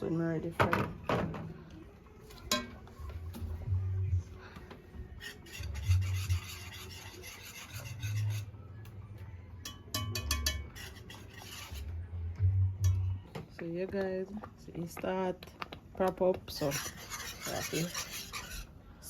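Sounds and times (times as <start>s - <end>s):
limes rasping on hard surface: 5.1s - 8.6s, 10.2s - 12.0s, 16.5s - 18.7s.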